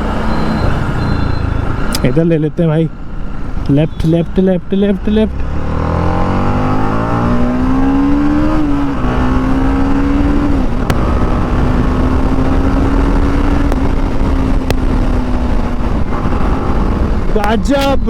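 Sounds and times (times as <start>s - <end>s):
motorcycle engine revving: 5.0s - 17.4s.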